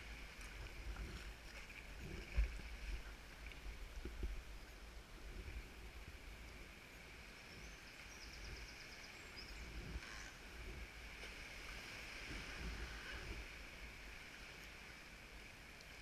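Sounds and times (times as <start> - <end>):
paddle splashes: 0.0 - 4.4
water lapping around a kayak: 0.0 - 16.0.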